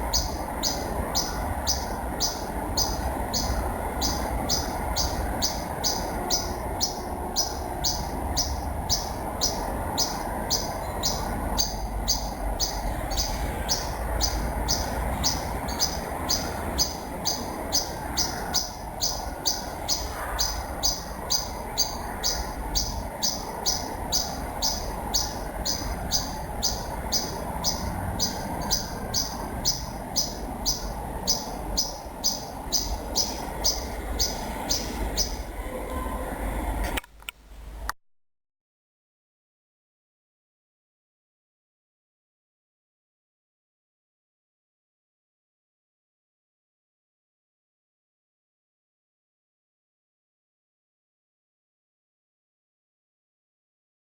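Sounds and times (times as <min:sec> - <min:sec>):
bird chirping: 0:00.0 - 0:35.5.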